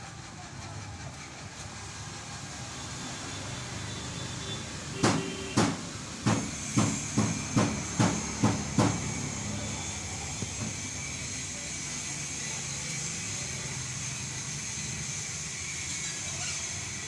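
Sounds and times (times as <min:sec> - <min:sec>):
diesel engine running: 0:00.0 - 0:17.0
sharp ringing knocks: 0:05.0 - 0:09.2.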